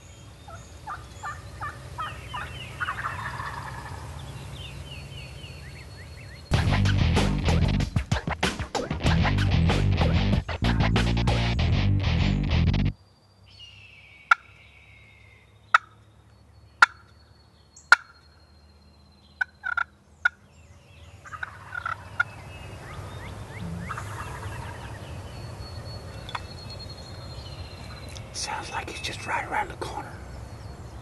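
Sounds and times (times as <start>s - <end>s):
turkey gobbling: 0.5s - 4.2s, 19.4s - 19.9s, 21.2s - 22.3s, 23.5s - 25.0s.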